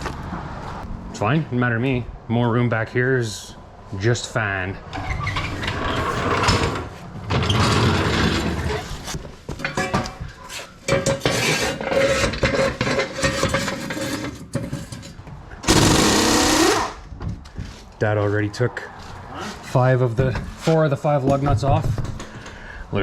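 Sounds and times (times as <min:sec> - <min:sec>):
loud burst of noise: 0:15.6 - 0:17.0
mechanism whine: 0:15.6 - 0:17.0.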